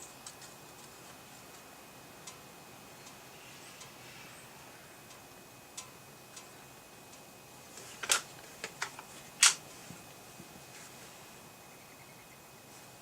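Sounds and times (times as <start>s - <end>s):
light clicks of rifle handling: 7.8s - 9.6s
air rifle cracks: 8.0s - 9.6s.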